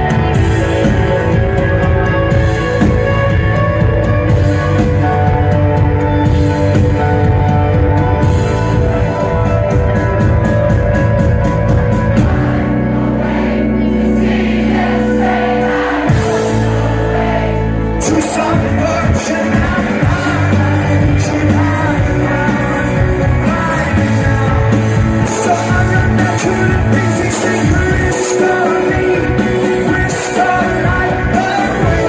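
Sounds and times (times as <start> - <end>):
rock band playing: 0.0 - 32.0
lead vocals singing: 11.9 - 32.0.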